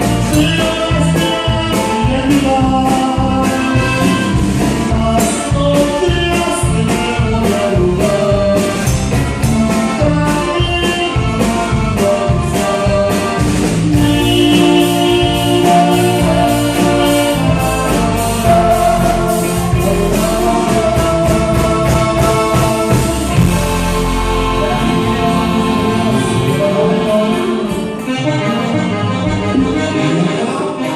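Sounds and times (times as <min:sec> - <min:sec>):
live band playing: 0:00.0 - 0:30.9
person singing: 0:00.0 - 0:30.9.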